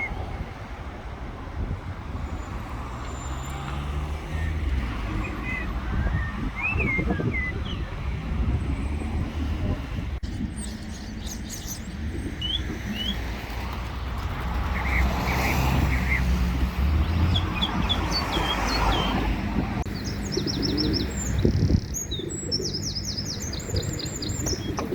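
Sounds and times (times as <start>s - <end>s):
small birds chirping: 4.4s - 9.1s, 10.2s - 13.4s, 14.0s - 24.9s.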